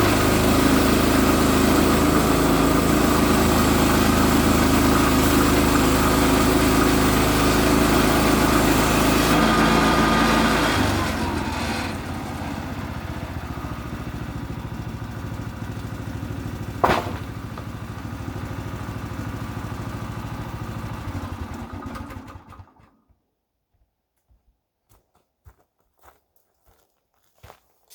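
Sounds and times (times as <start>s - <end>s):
petrol engine idling: 0.0s - 23.0s
sharp knock: 16.8s - 17.7s.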